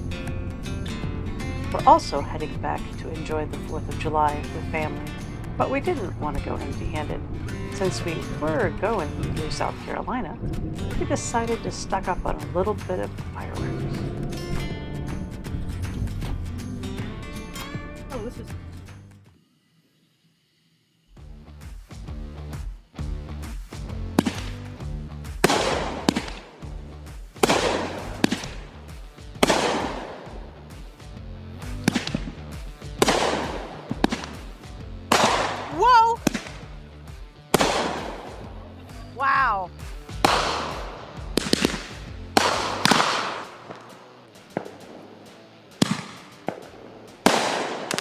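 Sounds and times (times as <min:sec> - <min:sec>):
background music with bass line: 0:00.0 - 0:19.3, 0:21.2 - 0:48.0
crackly hiss of fireworks: 0:23.7 - 0:36.7, 0:39.8 - 0:48.0
fireworks bangs: 0:25.4 - 0:26.8, 0:27.4 - 0:30.5, 0:31.6 - 0:36.7, 0:37.5 - 0:38.6, 0:40.1 - 0:43.9, 0:45.8 - 0:48.0.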